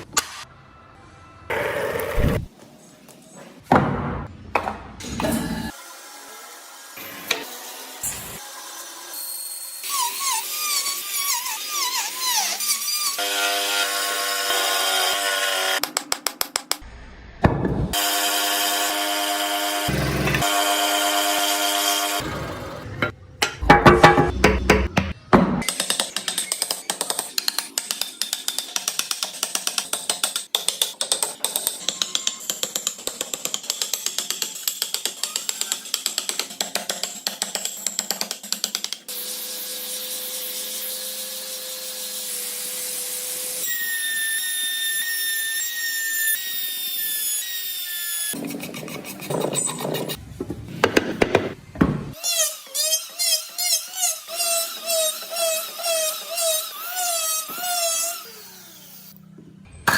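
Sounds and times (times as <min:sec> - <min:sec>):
power drill running: 0:18.0 - 0:22.8.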